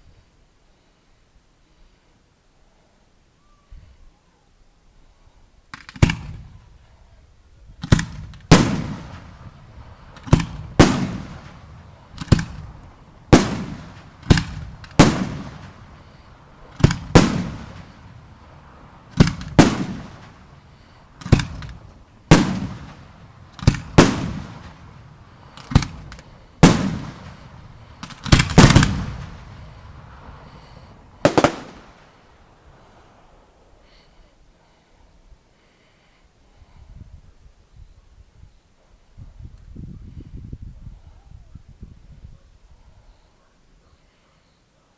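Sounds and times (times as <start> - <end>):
fireworks booming: 7.8 - 33.6.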